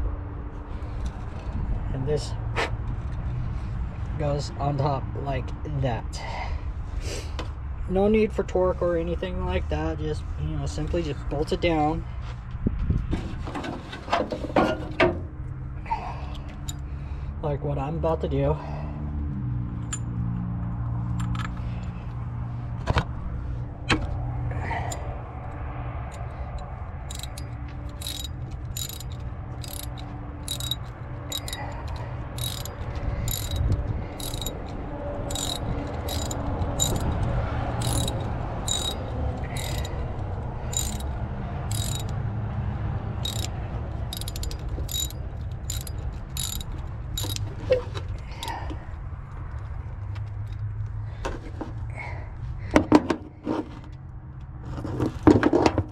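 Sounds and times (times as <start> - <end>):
socket ratchet clicking: 27.1 - 42.2, 43.2 - 47.5.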